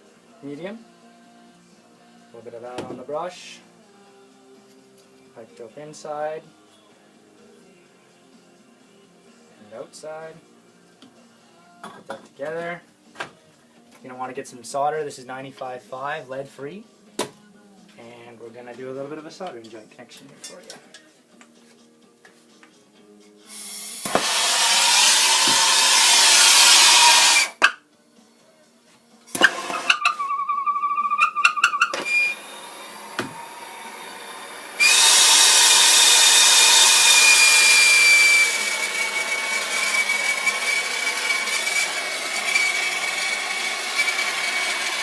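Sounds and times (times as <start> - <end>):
gas torch hissing: 23.4 - 27.6, 31.9 - 45.0
thin high whistle of flame: 23.5 - 27.7, 29.9 - 32.6, 34.8 - 38.7.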